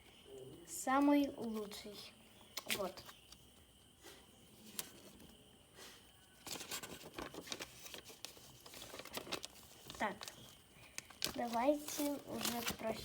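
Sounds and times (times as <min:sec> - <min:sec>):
paper rustling and crinkling: 0:04.6 - 0:05.4, 0:06.3 - 0:13.0.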